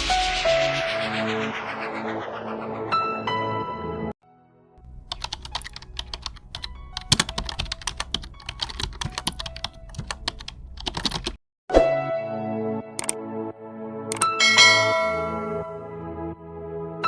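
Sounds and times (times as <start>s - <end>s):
typing on keyboard: 4.8s - 11.4s, 14.1s - 14.4s.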